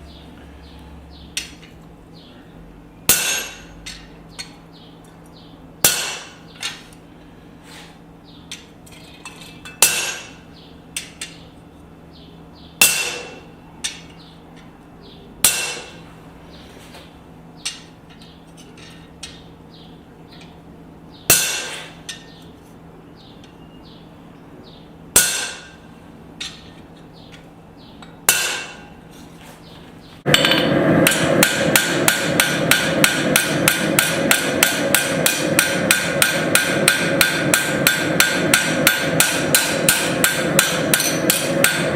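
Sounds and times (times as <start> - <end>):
hammer striking steel on anvil: 3.1 - 4.5, 5.8 - 6.8, 9.6 - 10.4, 12.8 - 14.2, 15.4 - 16.0, 21.3 - 22.4, 25.1 - 26.6, 28.0 - 29.0, 30.3 - 41.9
steady rushing noise: 30.3 - 41.9.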